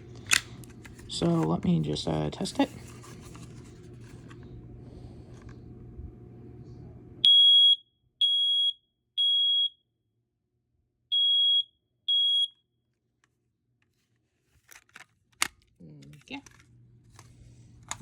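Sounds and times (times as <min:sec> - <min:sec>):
smoke alarm beeps: 0:07.2 - 0:09.9, 0:11.1 - 0:12.6.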